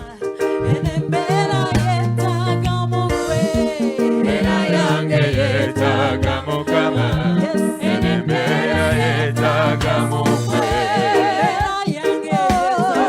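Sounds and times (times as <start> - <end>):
percussion: 0.0 - 13.0
song with singing voice: 0.0 - 13.0
bass notes: 0.5 - 11.3.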